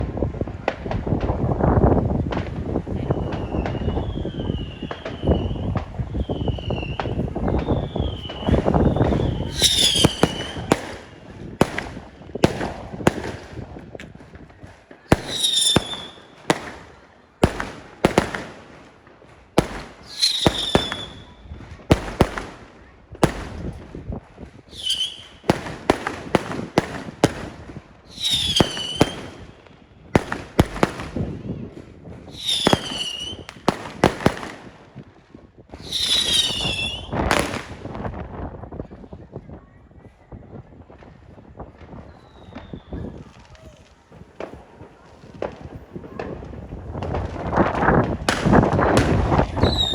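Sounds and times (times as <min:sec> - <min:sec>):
fireworks bangs and crackles: 0:00.0 - 0:49.9
high falling firework whistle: 0:03.1 - 0:10.9, 0:19.7 - 0:21.4, 0:24.7 - 0:25.5, 0:28.1 - 0:29.5, 0:32.3 - 0:33.5, 0:35.8 - 0:37.1, 0:48.3 - 0:49.9.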